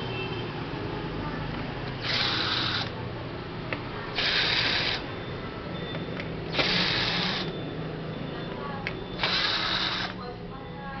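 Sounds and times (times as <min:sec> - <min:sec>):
screwdriver backing out screws: 0:06.5 - 0:07.5, 0:09.2 - 0:10.1.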